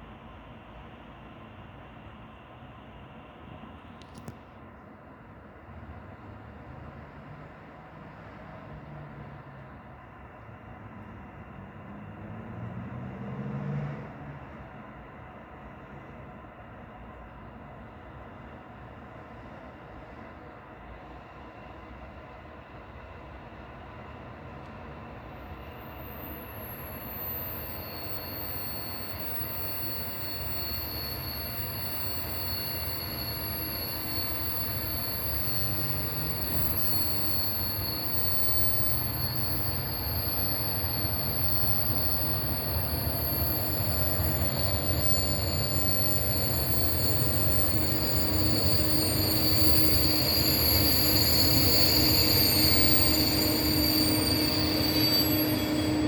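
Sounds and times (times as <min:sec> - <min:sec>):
freight train rumble: 0:13.8 - 0:56.0
wheel squeal: 0:25.4 - 0:56.0.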